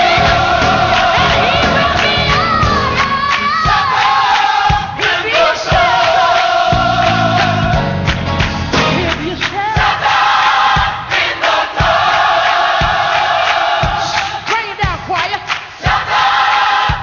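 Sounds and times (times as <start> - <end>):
bass: 0.0 - 3.9, 6.7 - 9.7
drums: 0.0 - 17.0
gospel choir singing: 0.0 - 17.0.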